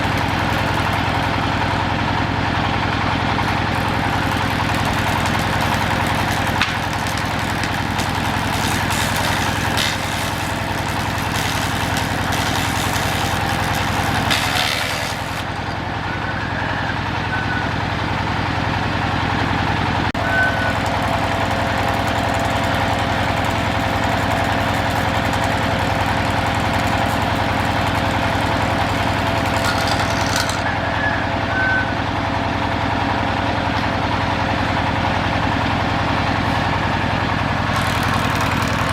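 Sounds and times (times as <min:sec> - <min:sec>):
machine engine running: 0:00.0 - 0:38.9
short high squeaks: 0:03.5 - 0:16.8, 0:24.3 - 0:30.8.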